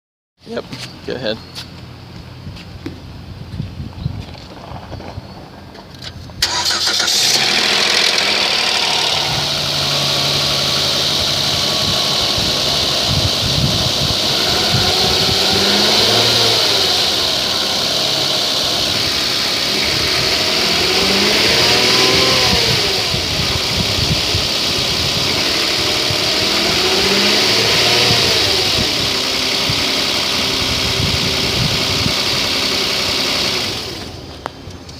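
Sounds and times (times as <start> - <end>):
hissing rattly engine noise: 6.4 - 30.8
car engine starting and revving: 6.4 - 34.3.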